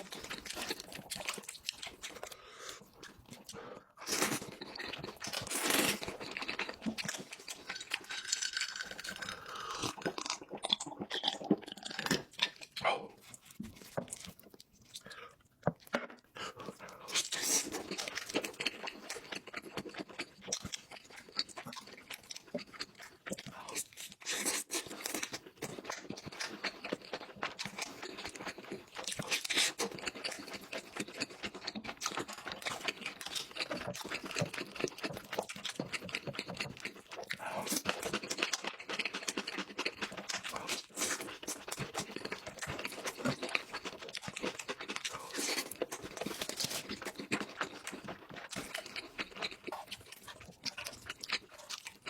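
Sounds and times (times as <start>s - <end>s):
chewing and crunching food: 0.0s - 52.0s.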